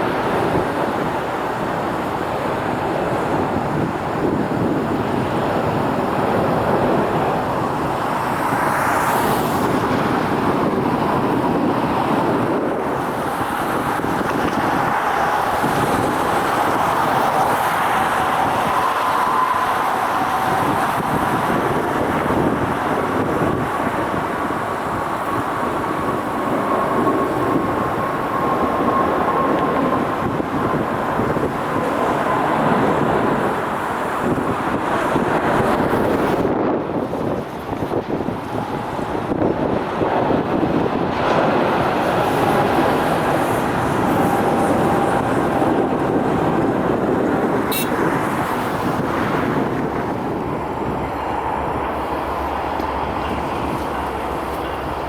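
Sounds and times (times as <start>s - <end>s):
jet engines roaring: 0.0s - 55.0s
wind on microphone: 0.0s - 55.0s
faint engine whine: 42.3s - 55.0s.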